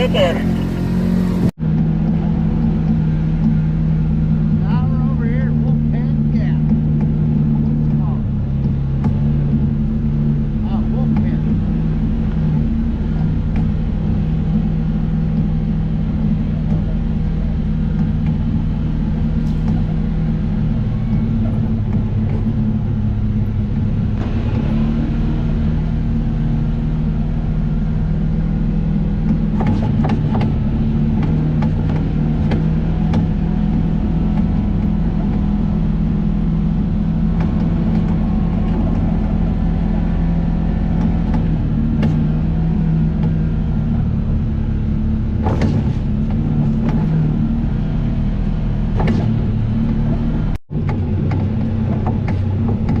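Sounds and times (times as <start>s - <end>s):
vehicle engine running: 0.0s - 53.0s
sharp knocks and clatters: 29.2s - 35.4s, 48.9s - 53.0s.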